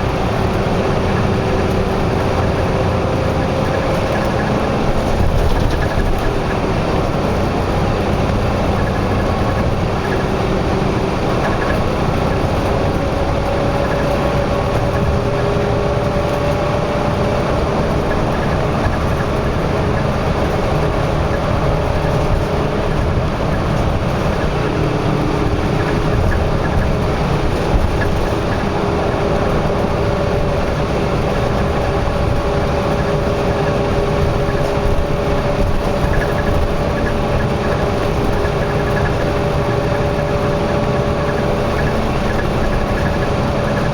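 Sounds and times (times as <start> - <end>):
highway traffic rumble: 0.0 - 43.9.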